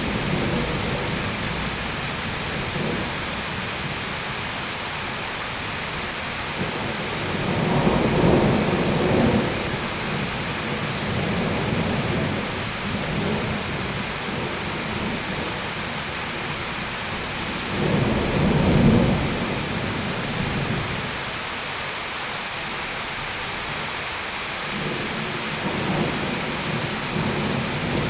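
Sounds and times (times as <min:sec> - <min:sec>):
rolling thunder: 0:00.0 - 0:04.0, 0:06.6 - 0:15.6, 0:17.2 - 0:21.0, 0:24.7 - 0:28.0
heavy rain: 0:00.0 - 0:28.0.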